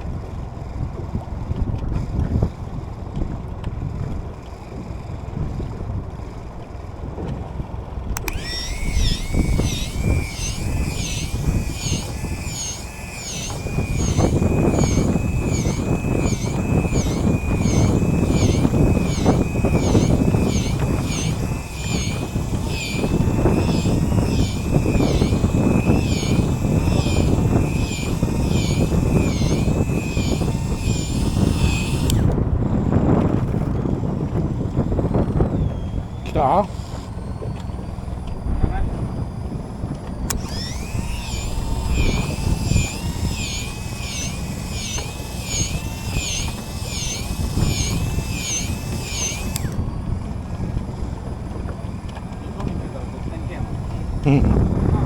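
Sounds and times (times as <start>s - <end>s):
wind: 0.0s - 55.0s
high warbling tone: 8.2s - 32.2s, 40.4s - 49.8s.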